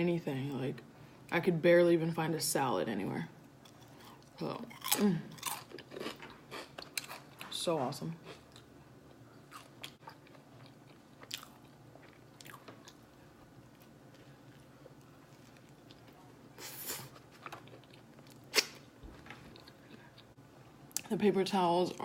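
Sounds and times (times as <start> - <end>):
person chewing a sandwich: 3.6 - 7.4, 8.2 - 21.0.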